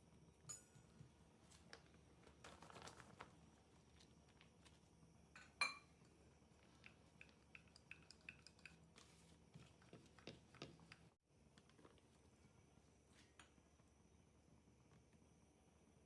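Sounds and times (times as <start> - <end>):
light taps and clicks of dishes: 5.4 - 6.1.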